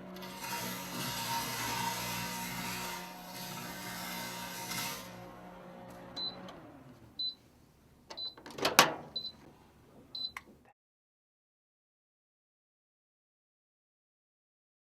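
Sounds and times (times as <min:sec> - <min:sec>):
microwave beeps: 0:06.2 - 0:06.5, 0:07.2 - 0:07.4, 0:08.2 - 0:08.4, 0:09.2 - 0:09.4, 0:10.2 - 0:10.4.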